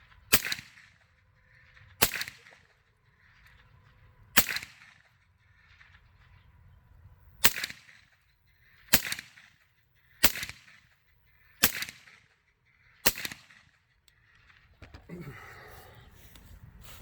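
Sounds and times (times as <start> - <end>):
suppressed rifle shots: 0.3 - 1.0, 2.0 - 2.7, 4.4 - 5.0, 7.4 - 8.1, 8.8 - 9.6, 10.2 - 10.9, 11.6 - 12.3, 13.0 - 15.0.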